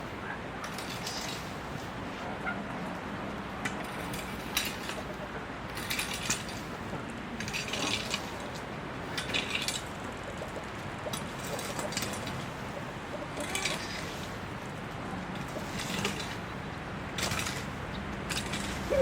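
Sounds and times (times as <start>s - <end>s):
steady background hum: 0.0s - 19.0s.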